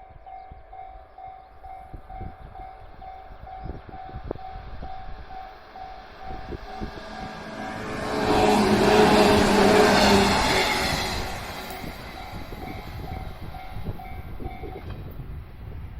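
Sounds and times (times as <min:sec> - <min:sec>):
level-crossing warning bell: 0:00.0 - 0:14.9
low rumble: 0:03.9 - 0:14.3.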